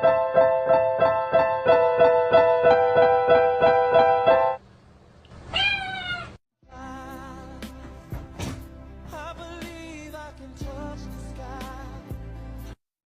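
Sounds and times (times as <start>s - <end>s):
cat meowing: 5.5s - 6.4s.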